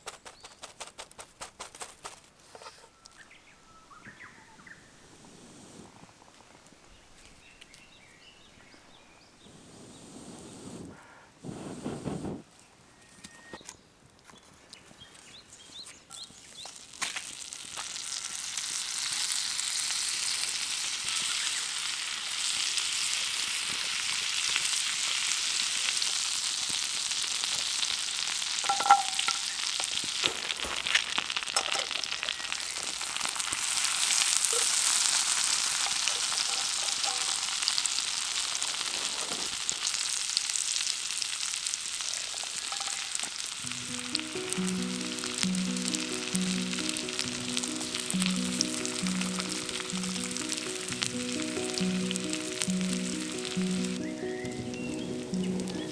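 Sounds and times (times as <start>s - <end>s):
food sizzling in hot oil: 16.1s - 55.9s
oil popping and spitting: 28.4s - 40.1s.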